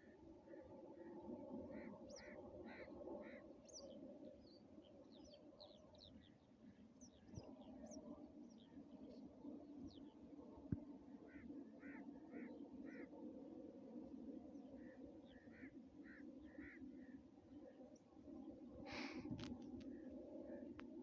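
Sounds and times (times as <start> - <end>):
faint bird calls: 0.0 - 4.0, 11.2 - 13.2, 14.7 - 17.9.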